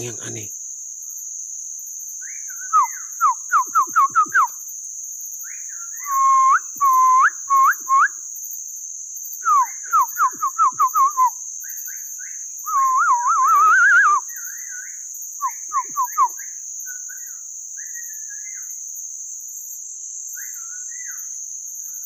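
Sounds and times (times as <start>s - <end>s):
high-pitched insect drone: 0.0s - 22.0s
man whistling bird calls: 2.3s - 4.6s, 5.5s - 8.2s, 9.4s - 18.7s.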